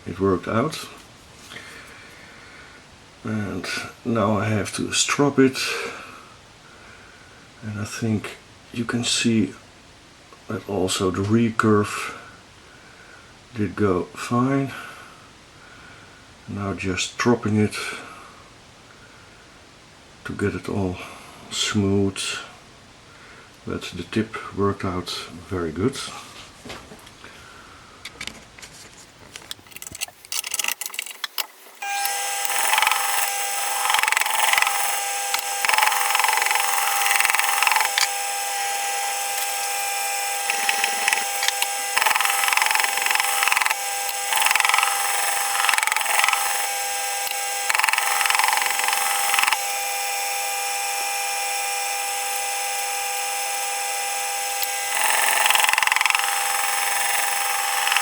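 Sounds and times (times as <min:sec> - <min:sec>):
sharpening machine motor whine: 0:29.7 - 0:58.0.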